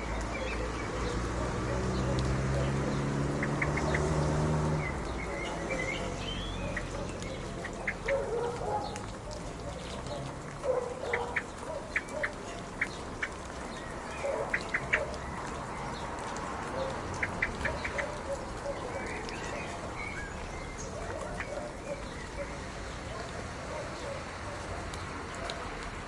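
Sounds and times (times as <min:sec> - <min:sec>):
birds chirping: 0:00.0 - 0:26.0
steady rain: 0:00.0 - 0:26.0
lower bird calls: 0:02.0 - 0:10.3.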